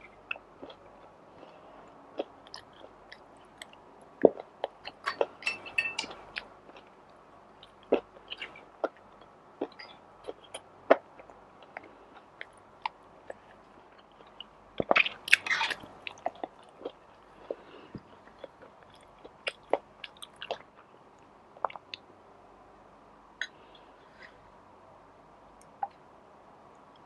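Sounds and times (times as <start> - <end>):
food crunching: 2.2 - 6.9, 7.6 - 20.7
chewing and biting food: 7.6 - 20.7.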